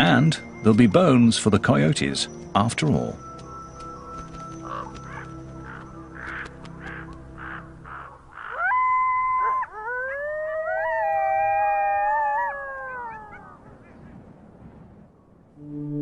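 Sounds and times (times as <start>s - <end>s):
wild canids howling: 3.5s - 14.0s.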